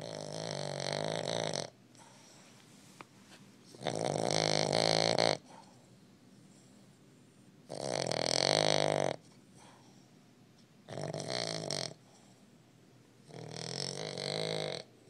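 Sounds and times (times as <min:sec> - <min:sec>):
dog snoring loudly: 0:00.0 - 0:01.8, 0:03.7 - 0:05.7, 0:07.7 - 0:09.3, 0:10.9 - 0:12.3, 0:13.2 - 0:15.0.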